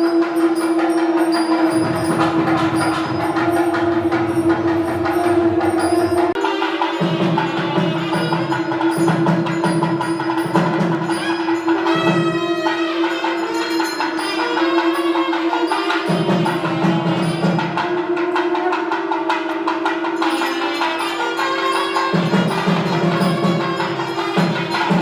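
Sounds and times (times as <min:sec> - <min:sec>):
held drone note: 0:00.0 - 0:10.4
rapid drum and percussion: 0:00.0 - 0:25.0
melody line: 0:00.8 - 0:06.4.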